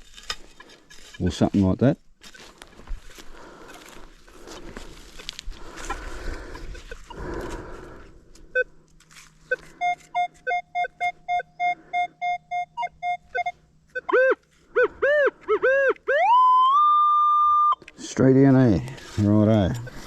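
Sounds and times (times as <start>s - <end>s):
metal detector short beeps: 9.5s - 17.8s
metal detector warbling tones: 9.5s - 17.8s
steady high tone: 9.5s - 17.8s.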